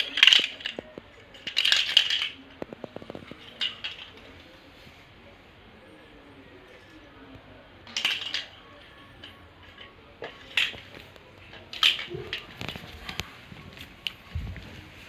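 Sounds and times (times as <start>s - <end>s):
small hard object clattering: 0.0s - 4.4s, 7.9s - 13.3s.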